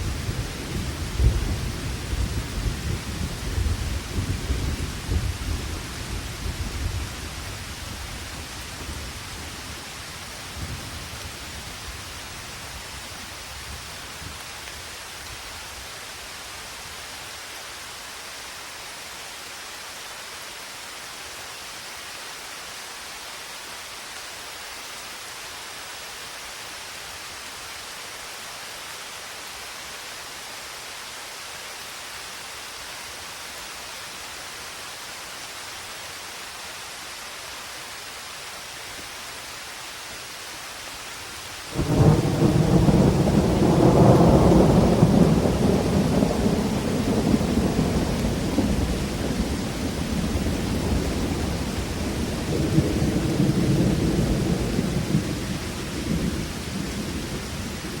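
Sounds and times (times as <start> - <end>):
heavy rain hissing: 0.0 - 58.0
thunder rumbling: 41.8 - 58.0.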